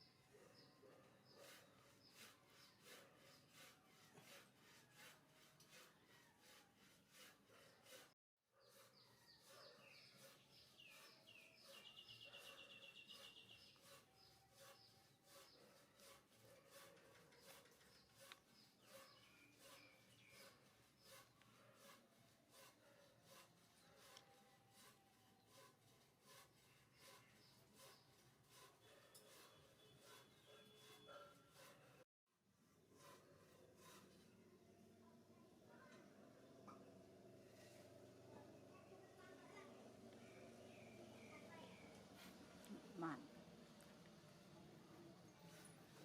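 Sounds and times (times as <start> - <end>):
small birds chirping: 0.0 - 4.1, 8.6 - 21.9, 22.8 - 32.0, 37.6 - 46.0.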